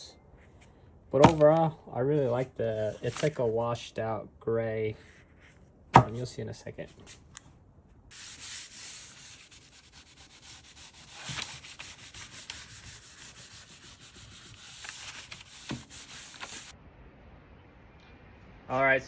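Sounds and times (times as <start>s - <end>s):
rag rubbing on wooden board: 8.1s - 16.7s.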